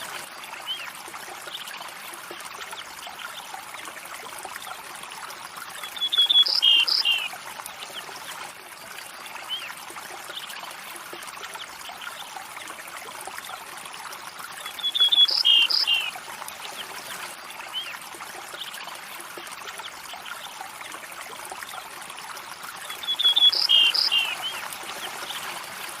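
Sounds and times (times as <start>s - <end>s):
stream running: 0.0s - 26.0s
bird chirping: 6.0s - 7.3s, 14.7s - 16.1s, 22.9s - 24.6s.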